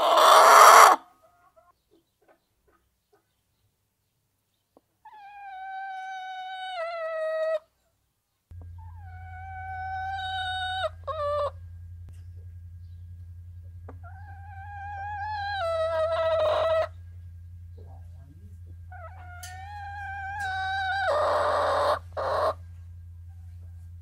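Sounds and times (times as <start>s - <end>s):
steady low hum: 8.5s - 24.0s
long drawn-out animal calls: 8.8s - 11.6s, 13.9s - 17.0s, 18.9s - 22.6s.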